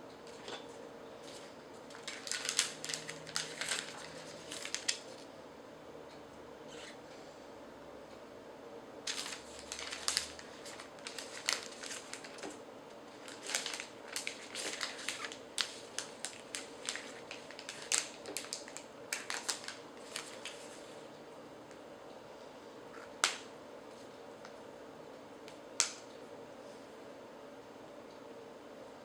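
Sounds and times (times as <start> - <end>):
packaging crinkling and clicking: 1.9 - 5.3, 9.1 - 20.7.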